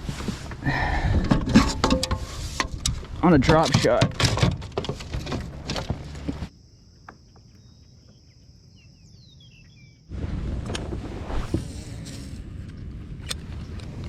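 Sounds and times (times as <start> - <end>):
birds chirping: 6.2 - 10.1.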